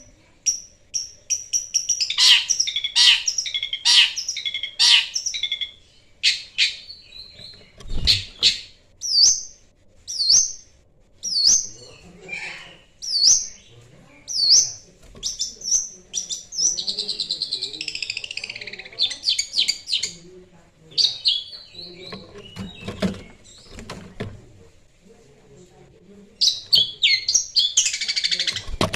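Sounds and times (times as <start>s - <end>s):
bird chattering: 0.0s - 13.7s, 14.3s - 20.3s, 20.9s - 24.3s, 26.4s - 28.9s
bird singing whistled notes: 1.0s - 10.6s, 11.2s - 11.9s.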